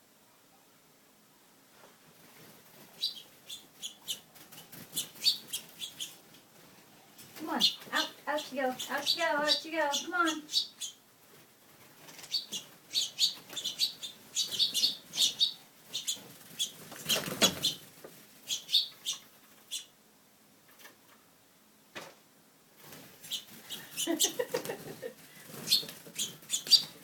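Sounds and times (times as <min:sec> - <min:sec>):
finches chirping: 0:02.9 - 0:06.2, 0:07.4 - 0:11.0, 0:12.2 - 0:17.8, 0:18.4 - 0:19.9, 0:23.2 - 0:24.4, 0:25.5 - 0:27.0.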